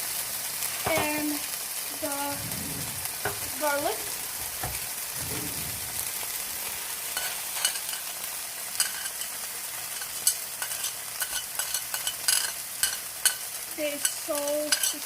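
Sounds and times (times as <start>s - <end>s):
meat sizzling in oil: 0.0s - 15.0s
utensil tapping cookware: 8.8s - 9.3s, 10.0s - 15.0s.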